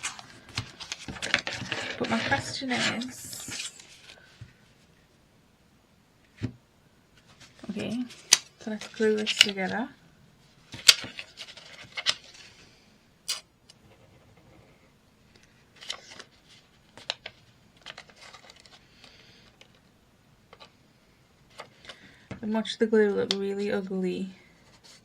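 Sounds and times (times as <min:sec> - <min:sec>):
paper rustling and rubbing: 0:00.0 - 0:04.3, 0:07.2 - 0:09.8, 0:10.8 - 0:12.6, 0:15.8 - 0:18.8.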